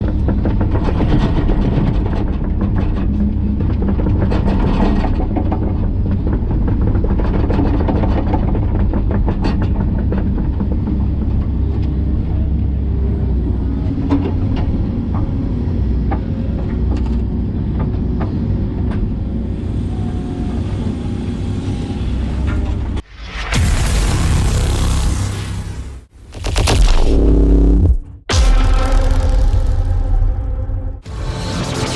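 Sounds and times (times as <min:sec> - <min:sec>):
excavator digging knocks and clicks: 0:00.0 - 0:12.0.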